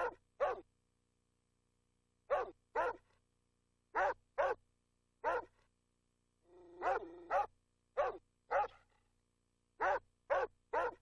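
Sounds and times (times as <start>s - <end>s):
dog barking: 0.0s - 0.7s, 2.3s - 3.1s, 3.9s - 4.6s, 5.2s - 5.6s, 6.6s - 8.9s, 9.8s - 11.0s.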